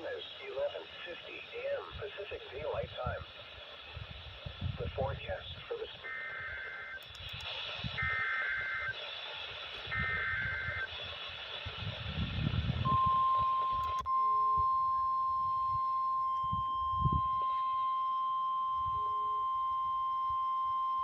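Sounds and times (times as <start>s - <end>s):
warbling data bursts: 0.0s - 13.7s
low noise: 0.0s - 21.0s
steady warning alarm tone: 6.0s - 11.2s, 12.8s - 21.0s.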